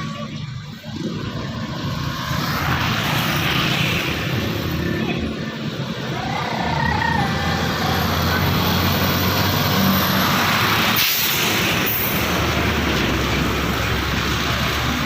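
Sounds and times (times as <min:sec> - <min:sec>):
diesel engine running: 0:00.0 - 0:15.0
road noise: 0:00.0 - 0:15.0
air brake hisses: 0:11.0 - 0:12.2.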